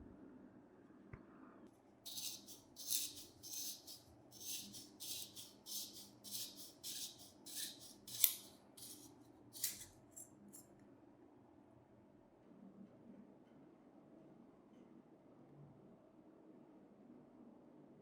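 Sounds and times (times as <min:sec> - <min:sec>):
abrasive rubbing strokes: 0:02.1 - 0:10.2.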